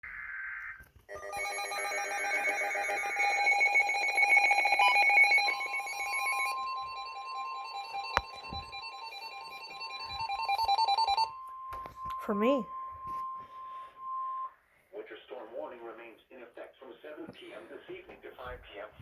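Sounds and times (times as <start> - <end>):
pulsing electronic alert tones: 1.1 - 14.5.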